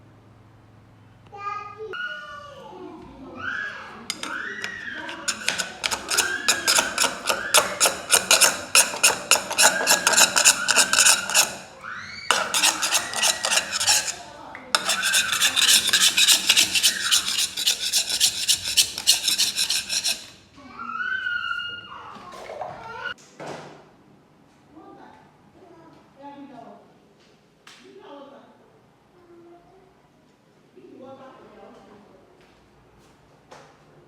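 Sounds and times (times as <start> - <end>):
hand tool rasping: 4.1 - 20.5.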